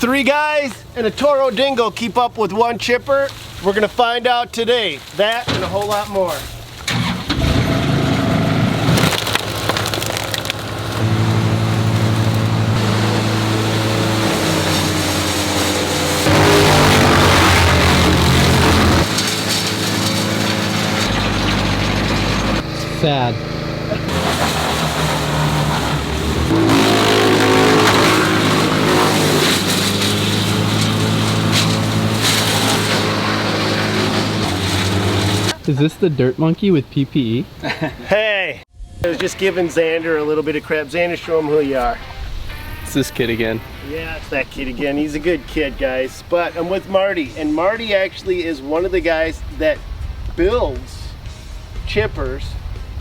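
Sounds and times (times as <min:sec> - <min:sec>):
wood chipper chewing branches: 0:00.0 - 0:35.7
engine running steadily: 0:07.0 - 0:35.6
wood cracking and splintering: 0:08.7 - 0:22.6, 0:24.0 - 0:35.6.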